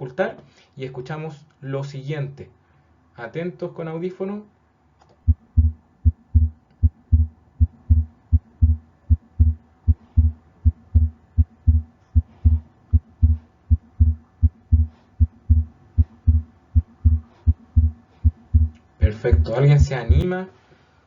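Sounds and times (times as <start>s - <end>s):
faint heart murmur: 5.3s - 20.2s
heartbeat through stethoscope: 5.3s - 20.2s.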